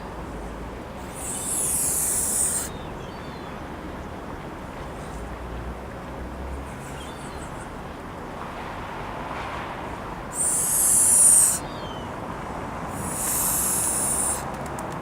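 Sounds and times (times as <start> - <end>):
goose hissing: 1.0 - 2.8, 10.3 - 11.7, 12.9 - 14.5.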